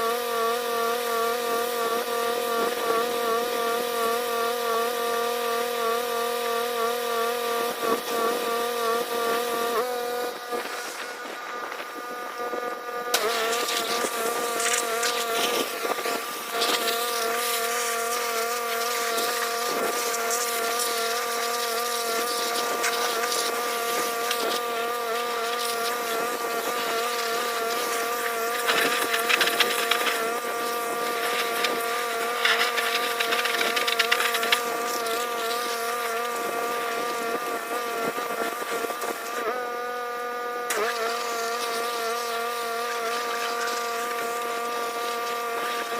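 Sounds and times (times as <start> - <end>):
water spray hissing: 13.1 - 24.7, 40.7 - 45.9
pressure washer engine drone: 13.1 - 39.4, 40.8 - 45.9.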